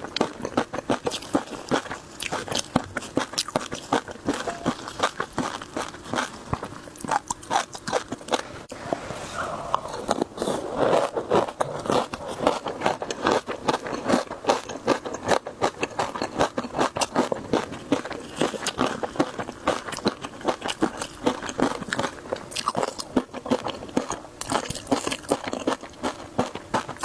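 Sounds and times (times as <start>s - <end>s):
person chewing crunchy food: 0.0s - 8.8s, 9.4s - 27.0s.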